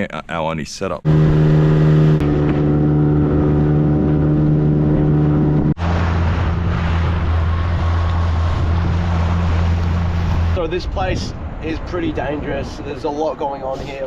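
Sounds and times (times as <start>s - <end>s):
small boat motor running: 1.1s - 10.6s
wind and water hiss: 6.1s - 14.0s.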